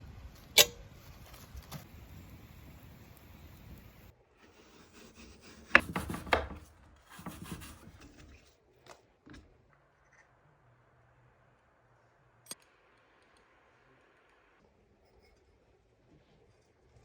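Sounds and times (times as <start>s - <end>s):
rubbing and scraping handling: 4.4s - 8.6s.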